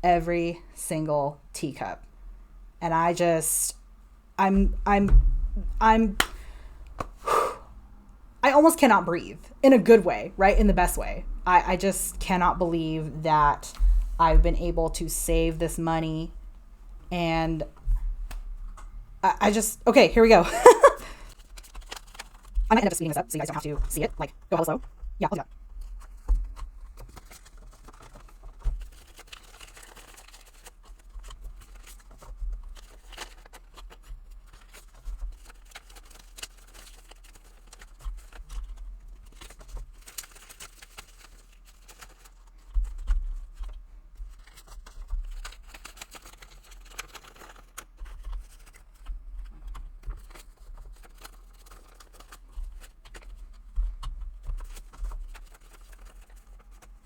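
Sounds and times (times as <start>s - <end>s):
paper rustling: 20.7s - 23.9s, 25.8s - 57.0s.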